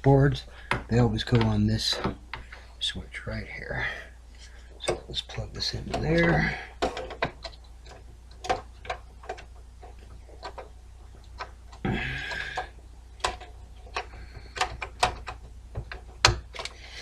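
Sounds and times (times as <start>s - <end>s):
graphics card clicks and knocks: 5.8s - 16.8s.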